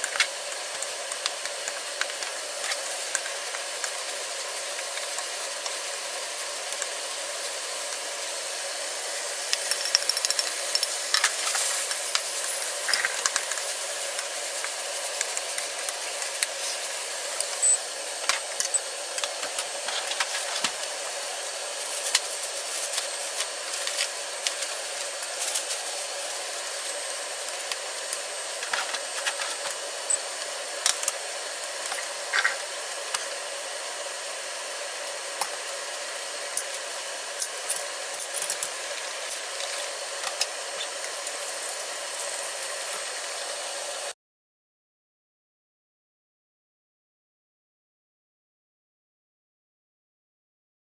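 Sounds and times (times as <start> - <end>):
steady cooking hiss: 0.0 - 44.2
utensils clicking and knocking: 9.5 - 16.6, 37.4 - 43.0.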